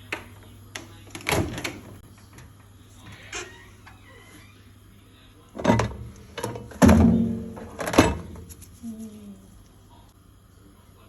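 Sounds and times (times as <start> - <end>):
microwave door and dish knocks: 5.6 - 8.5.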